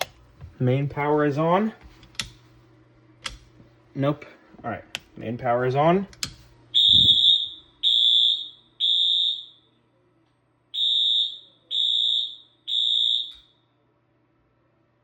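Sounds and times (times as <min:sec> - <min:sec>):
fire alarm horn beeping: 0:06.7 - 0:09.8, 0:10.7 - 0:13.7.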